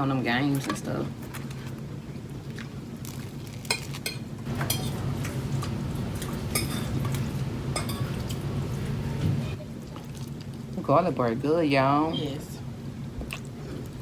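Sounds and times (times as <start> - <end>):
cutlery clinking on a plate: 3.7 - 5.2, 6.5 - 8.4
steady low hum: 4.1 - 14.0.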